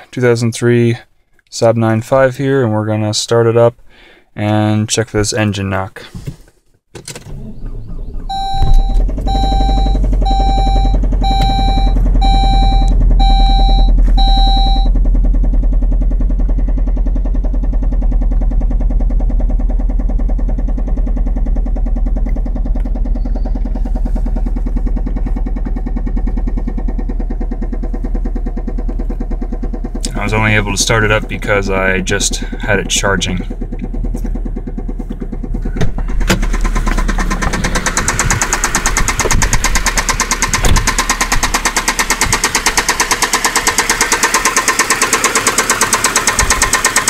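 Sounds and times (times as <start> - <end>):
car engine starting and idling: 7.0 - 47.0
dashboard warning chime beeping: 8.3 - 14.9.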